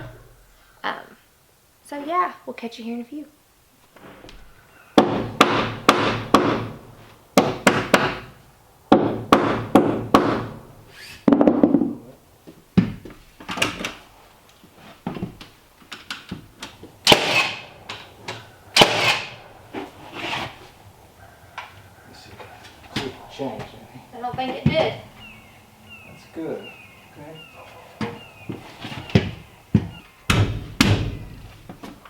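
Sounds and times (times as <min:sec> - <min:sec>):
hammer blows on wood: 0:08.9 - 0:10.6.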